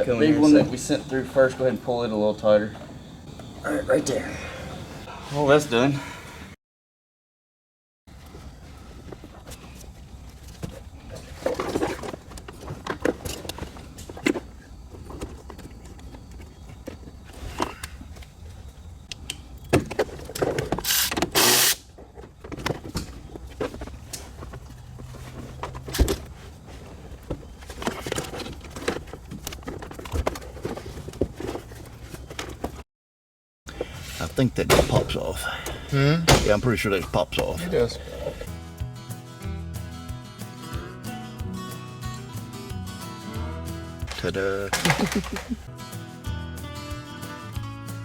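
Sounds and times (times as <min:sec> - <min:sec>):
handling clicks and knocks: 0:19.1 - 0:32.8, 0:44.0 - 0:45.7.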